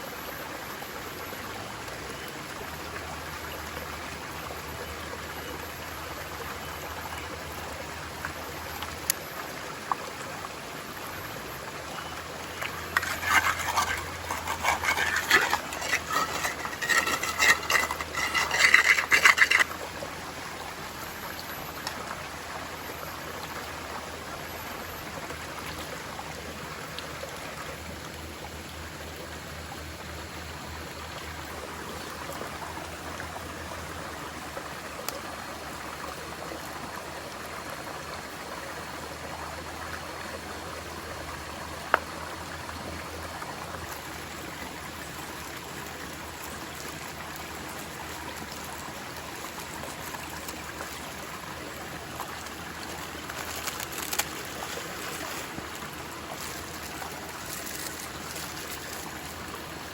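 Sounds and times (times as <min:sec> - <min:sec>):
stream flowing: 0:00.0 - 0:59.9
rapid clattering: 0:12.9 - 0:19.7.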